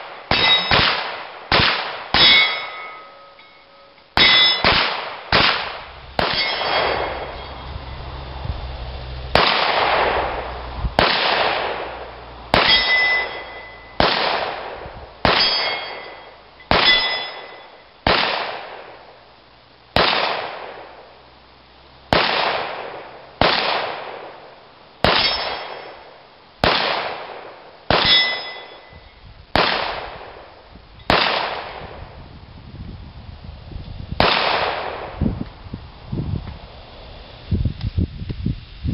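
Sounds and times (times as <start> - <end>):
pistol shots: 0.0 - 3.3, 4.2 - 7.6, 9.3 - 19.1, 20.0 - 21.0, 22.1 - 28.9, 29.5 - 30.5, 31.1 - 32.0, 34.2 - 35.2
bullet ringing steel target: 0.0 - 8.2, 9.4 - 19.2, 22.1 - 32.0.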